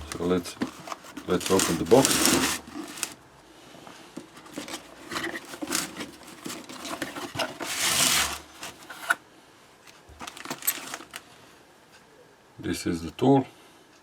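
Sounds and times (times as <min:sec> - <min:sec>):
cardboard box rustling: 0:00.0 - 0:03.2, 0:03.8 - 0:09.2, 0:10.1 - 0:11.2
rasping scrape: 0:00.0 - 0:03.2, 0:04.2 - 0:09.2.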